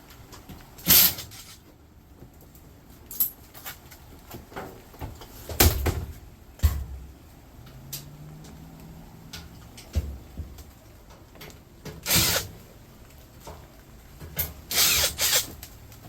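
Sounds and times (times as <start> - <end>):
knocks and clanks of scrap metal: 4.4 - 7.2.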